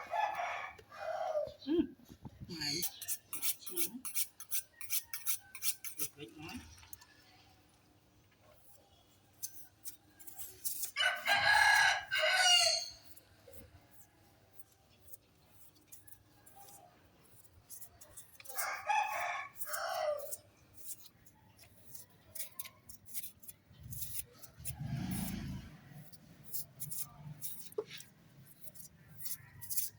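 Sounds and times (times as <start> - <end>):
rooster crowing: 11.0 - 13.0, 18.5 - 20.4.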